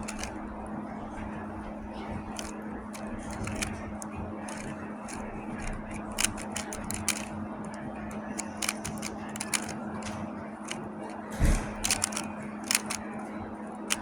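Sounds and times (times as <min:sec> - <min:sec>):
puzzle cube clicking: 0:00.0 - 0:00.4, 0:02.2 - 0:11.2, 0:11.8 - 0:13.2, 0:13.8 - 0:14.0.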